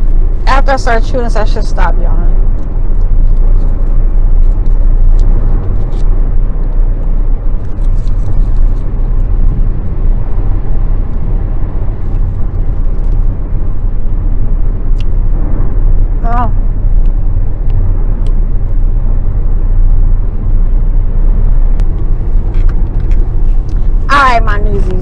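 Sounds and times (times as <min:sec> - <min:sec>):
car road rumble from inside: 0:00.0 - 0:25.0.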